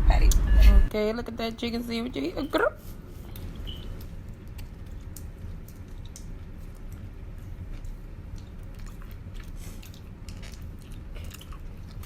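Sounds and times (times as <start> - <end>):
crunchy chewing: 3.2 - 12.0.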